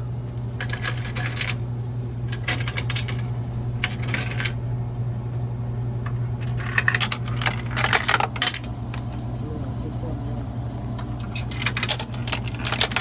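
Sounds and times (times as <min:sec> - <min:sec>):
steady low hum: 0:00.0 - 0:13.0
coins clattering through machine: 0:00.5 - 0:04.6, 0:06.4 - 0:10.2, 0:11.2 - 0:13.0.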